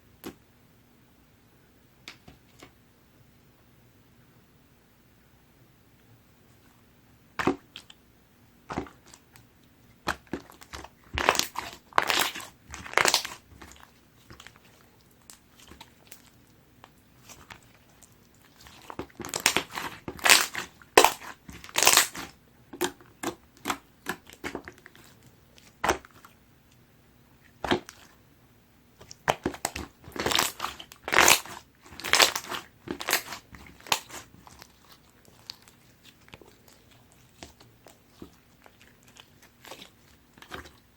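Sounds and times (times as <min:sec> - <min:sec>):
slime squeezed by hand: 0:10.1 - 0:16.3, 0:17.2 - 0:26.3, 0:29.0 - 0:40.9.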